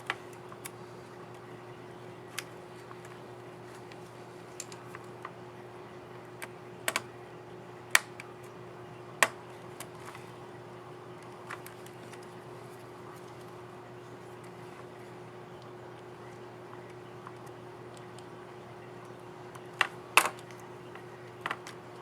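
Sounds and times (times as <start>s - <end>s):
plastic keyboard key clicks: 6.9s - 7.1s.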